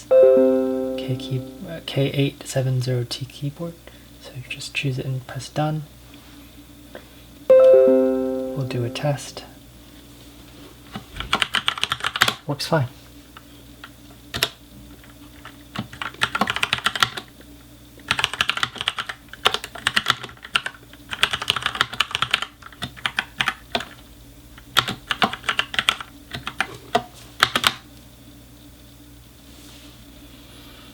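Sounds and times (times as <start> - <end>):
mechanical keyboard typing: 11.3 - 12.4, 15.4 - 17.3, 18.0 - 24.0, 24.6 - 27.8.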